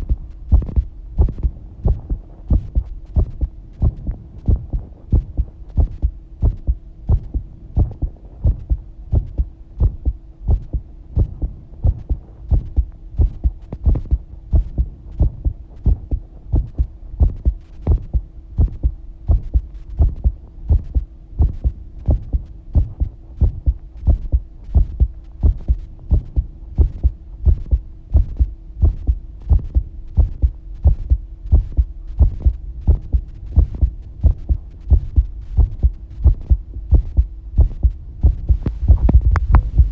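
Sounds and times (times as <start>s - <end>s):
human heartbeat: 0.0s - 39.9s
steady hum: 0.0s - 39.9s.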